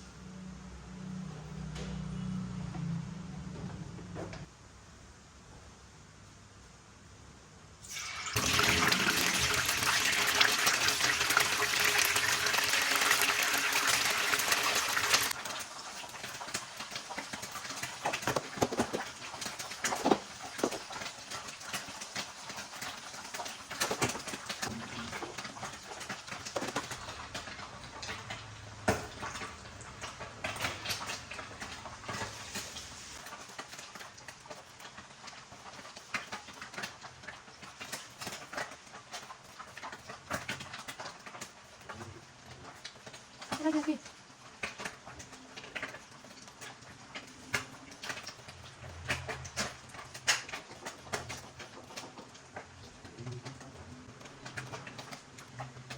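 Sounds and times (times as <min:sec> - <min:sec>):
water running from kitchen tap: 0:07.8 - 0:38.2.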